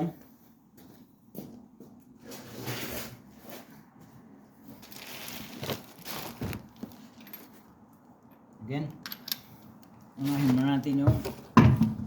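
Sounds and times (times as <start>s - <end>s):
scraping and rustling handling: 4.6s - 7.8s, 10.2s - 11.5s.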